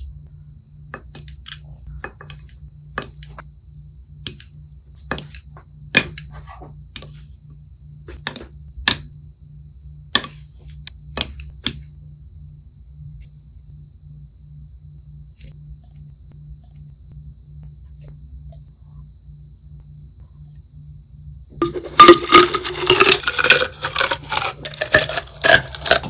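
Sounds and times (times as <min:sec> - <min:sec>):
low hum: 0:11.9 - 0:26.0.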